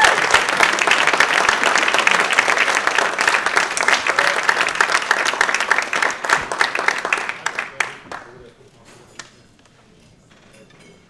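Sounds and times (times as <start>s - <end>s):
audience applauding: 0.0s - 8.5s.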